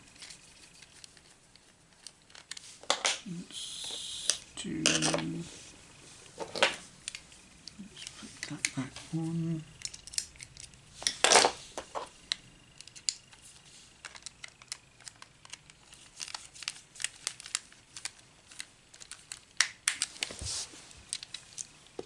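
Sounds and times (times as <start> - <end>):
rustling scrape: 20.2 - 21.0.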